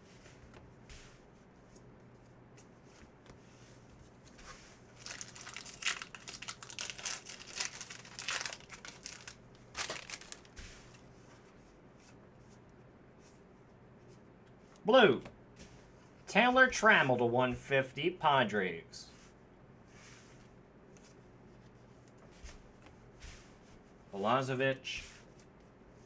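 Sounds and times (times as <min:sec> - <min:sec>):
foil wrapper tearing and crinkling: 0:05.0 - 0:10.6.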